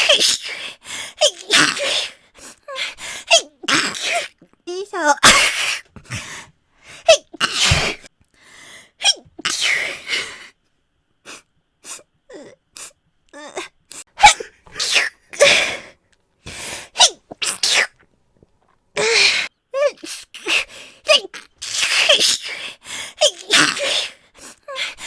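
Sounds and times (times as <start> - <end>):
sharp gasping in-breaths: 0.0 - 1.2, 2.4 - 3.3, 5.5 - 7.1, 8.4 - 9.0, 15.4 - 17.0, 22.4 - 23.2
person sneezing: 0.0 - 4.4, 5.2 - 6.2, 7.0 - 8.1, 9.0 - 10.1, 13.9 - 15.9, 16.5 - 18.0, 19.0 - 25.0.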